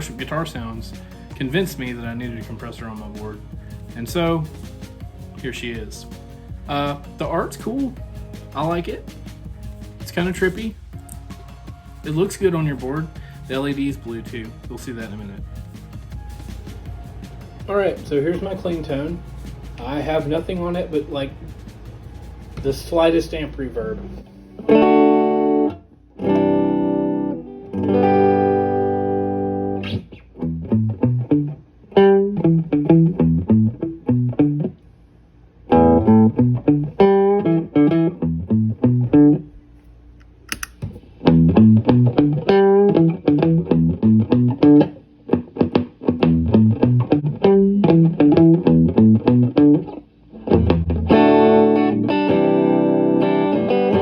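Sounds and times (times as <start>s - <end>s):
clean electric guitar: 24.1s - 34.8s, 35.7s - 39.7s, 40.5s - 54.0s
sharp click: 40.2s - 41.0s.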